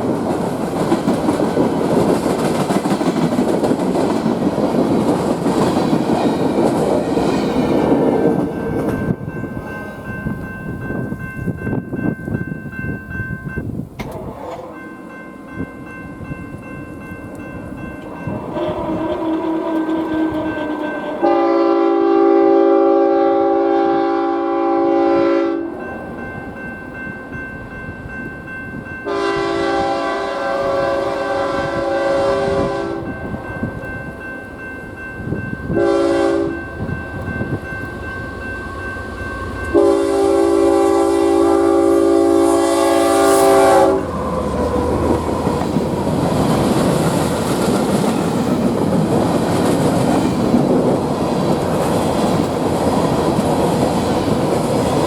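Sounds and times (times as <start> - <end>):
train passing with wheel noise: 0.0 - 55.0
locomotive air horn blasts: 18.4 - 25.8, 29.1 - 33.2, 35.8 - 36.7, 39.7 - 44.6.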